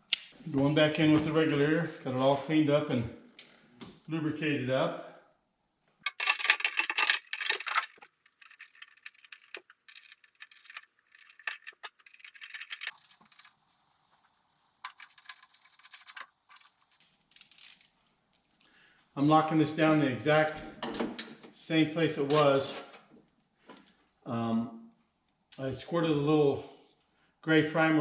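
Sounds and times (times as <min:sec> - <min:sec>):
window regulator rattling and clinking: 0:06.1 - 0:13.5.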